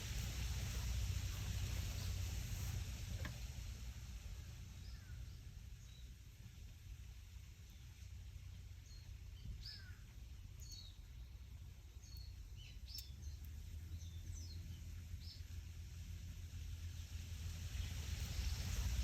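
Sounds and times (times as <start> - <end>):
small birds chirping: 0.0 - 2.8, 4.7 - 6.9, 7.5 - 15.7
low wind rumble: 0.0 - 19.0.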